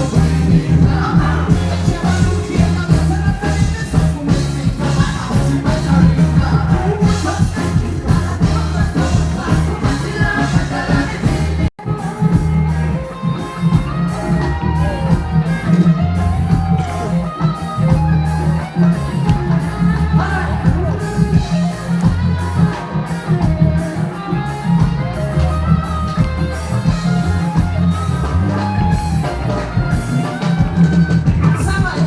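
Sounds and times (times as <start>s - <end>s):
person singing: 0.0s - 12.5s
live band playing: 0.0s - 32.0s.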